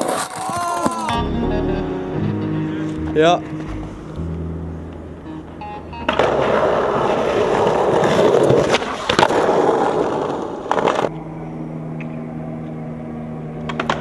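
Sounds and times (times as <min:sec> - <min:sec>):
skateboard clacks: 0:00.0 - 0:01.4, 0:05.8 - 0:11.1, 0:13.6 - 0:14.0
skateboard wheels rolling on pavement: 0:00.0 - 0:01.5, 0:03.6 - 0:14.0.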